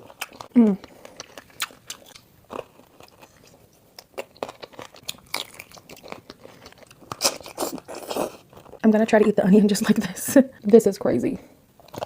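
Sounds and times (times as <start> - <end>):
person crunching food: 0.0 - 8.8, 11.8 - 12.0.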